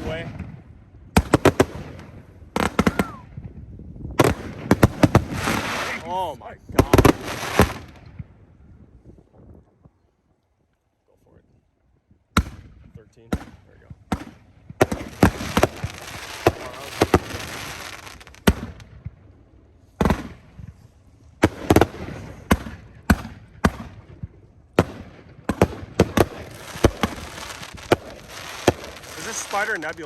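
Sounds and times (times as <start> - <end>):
firework shots and aerial bursts: 0.0 - 9.0, 12.3 - 30.0
firework hiss: 4.8 - 8.0, 14.8 - 18.8, 26.0 - 30.0.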